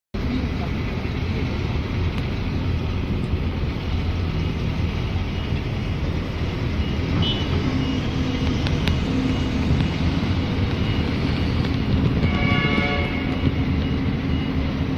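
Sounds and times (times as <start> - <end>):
city traffic rumble: 0.1 - 14.9.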